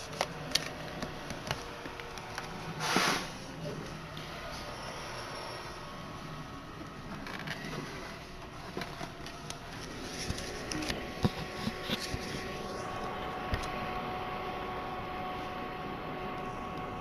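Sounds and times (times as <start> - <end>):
steady mechanical hum: 0.0 - 17.0
thin steady tones: 3.4 - 7.1.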